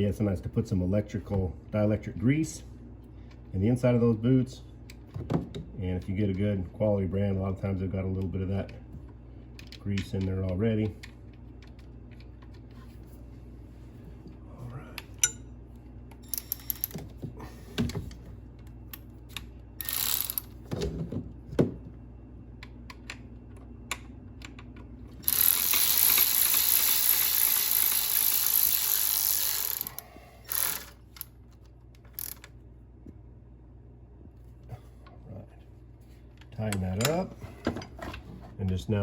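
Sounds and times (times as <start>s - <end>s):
ratchet clicking: 16.2s - 17.0s, 19.8s - 20.5s, 25.2s - 31.3s, 32.1s - 32.5s.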